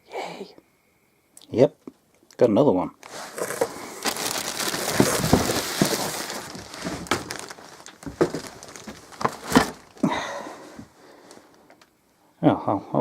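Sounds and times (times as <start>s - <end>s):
packaging crinkling and rustling: 3.0s - 11.9s.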